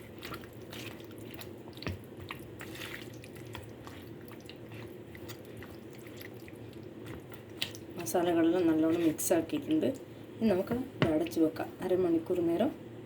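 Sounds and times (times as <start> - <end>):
hands mixing wet food: 0.0 - 12.0.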